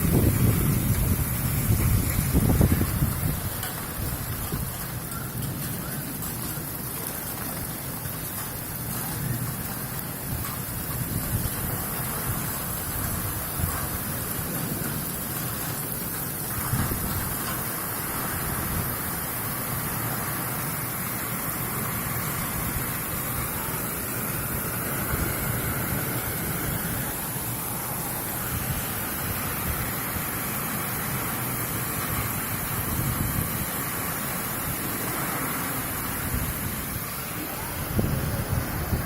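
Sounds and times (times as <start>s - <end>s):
wind buffeting microphone: 0.0s - 19.9s, 22.2s - 30.5s, 31.5s - 39.0s
heavy rain pouring: 0.0s - 39.0s.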